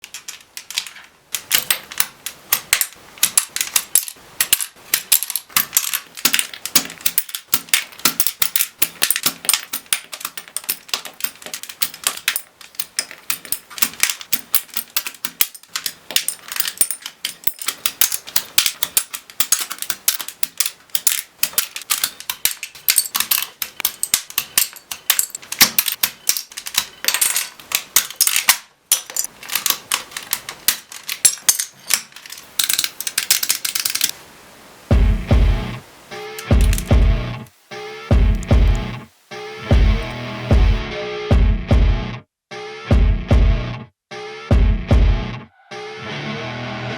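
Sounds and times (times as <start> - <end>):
mechanical keyboard keys clacking: 0.0 - 34.1, 36.4 - 37.1.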